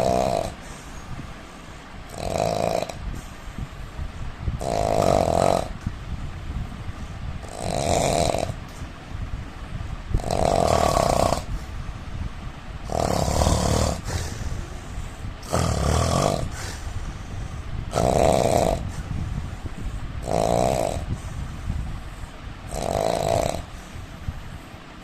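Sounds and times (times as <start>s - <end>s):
man snoring: 0.0s - 1.0s, 2.0s - 3.4s, 4.6s - 5.8s, 7.4s - 8.7s, 10.1s - 11.7s, 12.8s - 19.2s, 20.2s - 21.6s, 22.6s - 24.0s.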